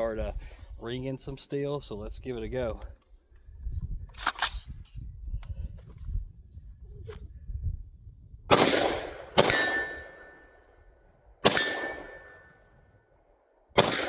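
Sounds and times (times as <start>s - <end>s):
rifle shots: 8.5s - 10.5s, 11.4s - 12.5s, 13.8s - 14.0s
steel targets ringing: 9.4s - 10.5s, 11.5s - 12.6s.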